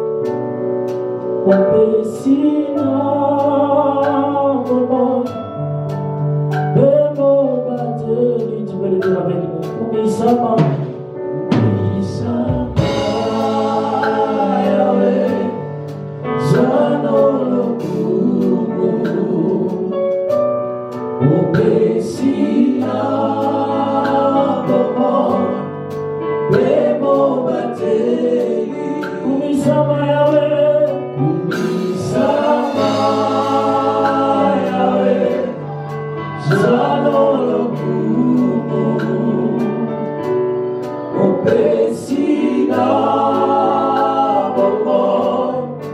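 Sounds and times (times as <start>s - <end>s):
choir singing gospel: 0.0s - 45.9s
sustained keyboard chords: 0.0s - 45.9s
steady beat: 10.3s - 27.4s, 29.0s - 45.5s.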